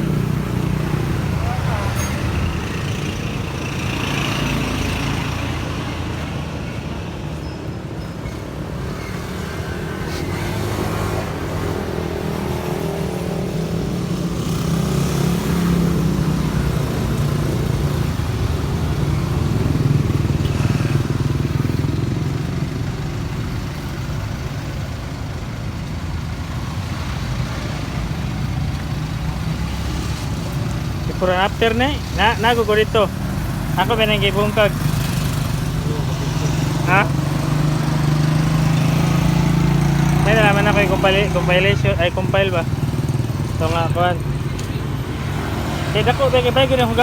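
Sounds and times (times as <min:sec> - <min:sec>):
motorcycle engine running: 0:12.2 - 0:47.0.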